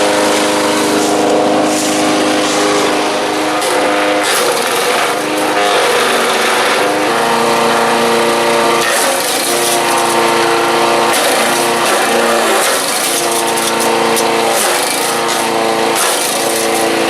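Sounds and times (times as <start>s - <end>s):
wood chipper engine running: 0.0s - 17.0s
wood being chipped: 8.4s - 17.0s.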